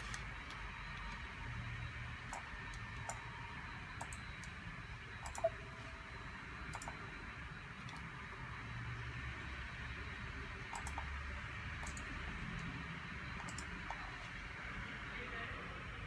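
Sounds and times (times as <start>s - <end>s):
light clicks and ticks: 5.2s - 5.5s, 6.7s - 7.0s, 10.7s - 11.1s, 13.4s - 14.0s.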